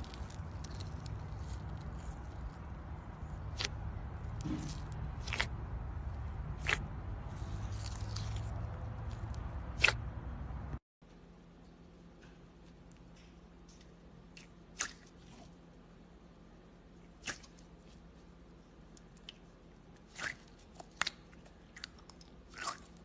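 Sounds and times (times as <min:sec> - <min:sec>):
low steady rumble: 0:00.0 - 0:23.0
slime squished by hand: 0:03.4 - 0:05.6, 0:06.6 - 0:10.0, 0:18.9 - 0:23.0.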